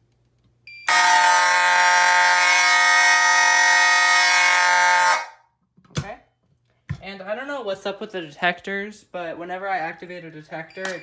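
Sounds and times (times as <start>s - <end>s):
fire alarm horn blast: 0.8s - 5.4s.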